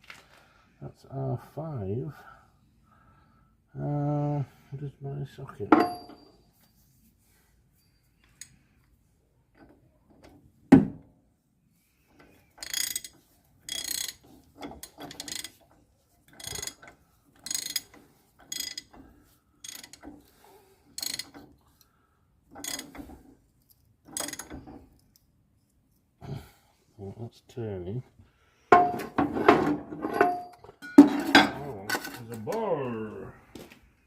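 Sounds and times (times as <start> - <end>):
ratchet wrench rasping strokes: 12.6 - 15.6, 16.3 - 19.0, 19.6 - 20.1, 21.0 - 21.9, 22.6 - 23.1
sharp wrench clack: 16.4 - 18.9.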